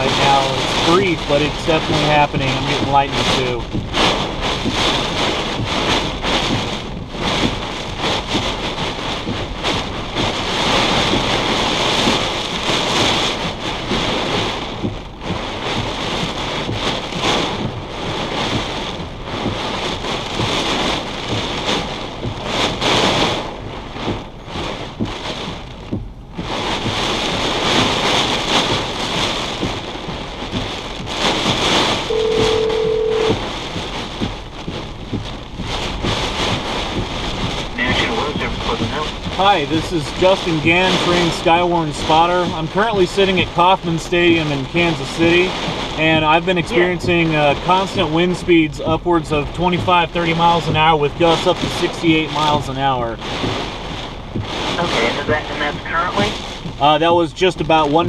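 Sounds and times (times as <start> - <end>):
strong gusting wind: 0.0 - 43.0
heavy rain on vehicle: 0.0 - 58.0
short steady beep: 32.1 - 33.4.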